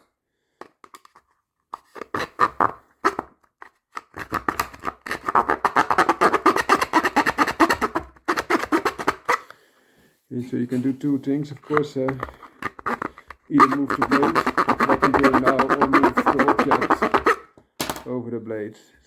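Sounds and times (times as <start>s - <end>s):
hand saw rasping strokes: 11.4s - 17.5s.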